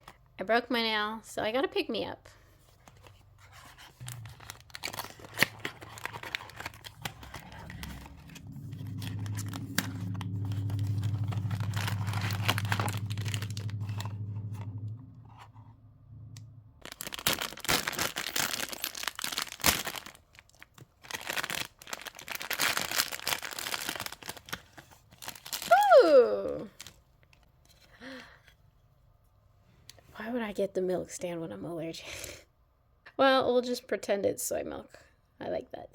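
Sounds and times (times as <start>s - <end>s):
packaging tearing and crinkling: 3.8s - 14.6s, 16.8s - 25.8s, 26.5s - 27.5s
steady low hum: 6.0s - 16.8s.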